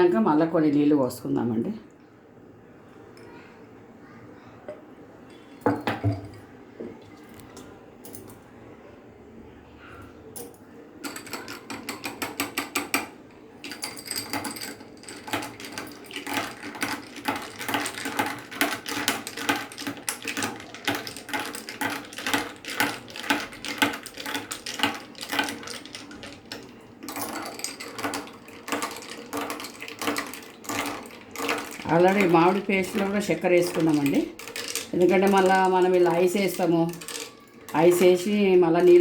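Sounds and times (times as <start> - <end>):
spoon clinking ice in glass: 10.4 - 39.0.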